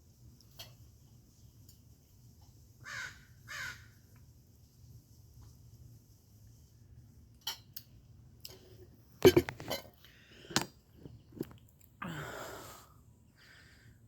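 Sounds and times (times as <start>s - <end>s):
chewing and crunching food: 10.9s - 12.0s.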